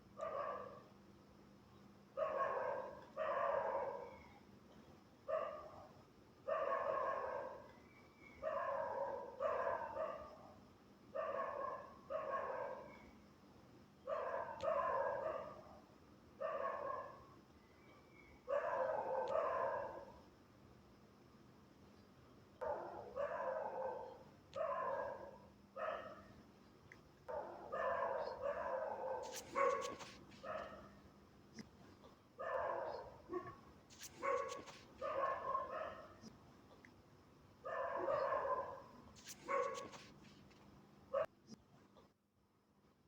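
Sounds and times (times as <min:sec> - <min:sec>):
dog barking: 0:00.2 - 0:00.9, 0:02.2 - 0:04.3, 0:05.3 - 0:07.7, 0:08.4 - 0:13.1, 0:14.1 - 0:15.8, 0:16.4 - 0:17.3, 0:18.5 - 0:20.2, 0:22.6 - 0:26.3, 0:27.3 - 0:31.0, 0:32.4 - 0:36.3, 0:37.6 - 0:40.4, 0:41.1 - 0:41.3.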